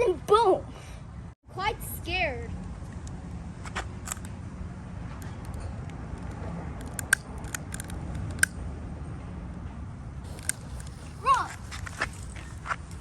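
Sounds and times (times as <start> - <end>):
sharp little clicks: 6.2 - 8.6.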